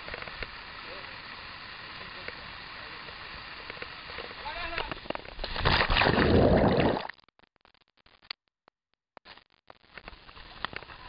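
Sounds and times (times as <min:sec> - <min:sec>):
faint clicks: 0:03.1 - 0:05.4.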